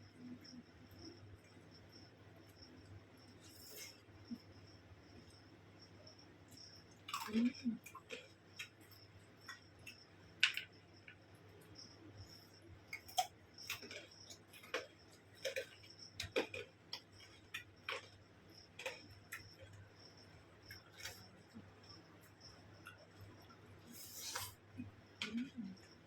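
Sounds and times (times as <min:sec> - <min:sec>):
chewing and mouth sounds: 0:12.9 - 0:19.8.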